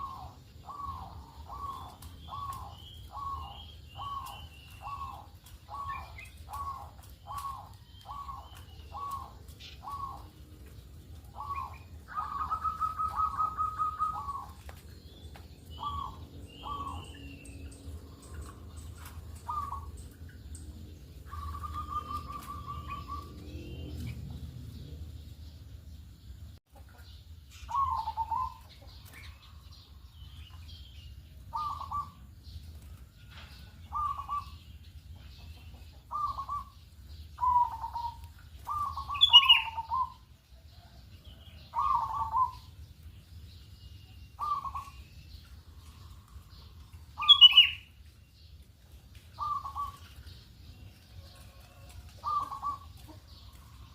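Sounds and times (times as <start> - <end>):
dove cooing: 0.0 - 14.8, 15.8 - 17.4, 18.1 - 20.0, 21.2 - 24.2, 27.7 - 28.7, 31.5 - 32.2, 33.9 - 34.6, 35.9 - 36.8, 37.4 - 40.2, 41.7 - 42.7, 44.4 - 45.0, 49.4 - 50.0, 51.2 - 53.8.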